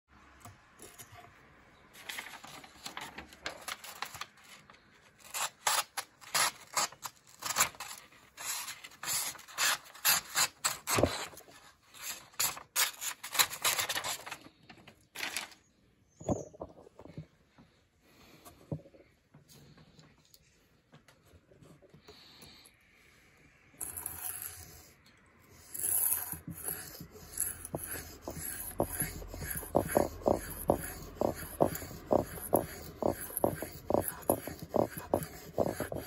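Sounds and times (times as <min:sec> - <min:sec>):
knife blade scraping: 0:23.8 - 0:36.0.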